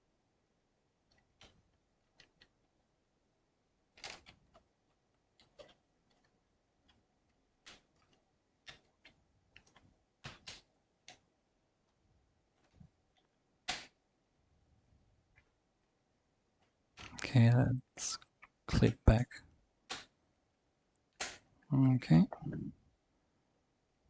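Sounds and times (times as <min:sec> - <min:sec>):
small clicks and taps of handling: 0:04.0 - 0:11.3.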